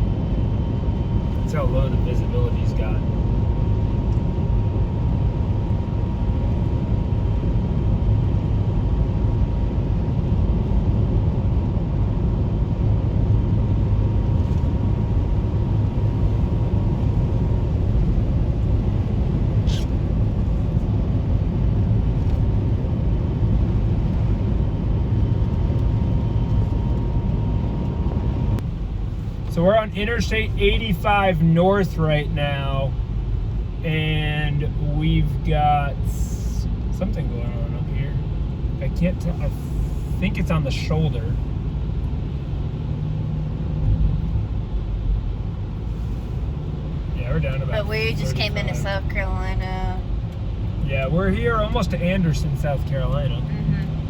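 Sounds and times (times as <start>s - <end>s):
car interior road and engine rumble: 0.0s - 54.0s.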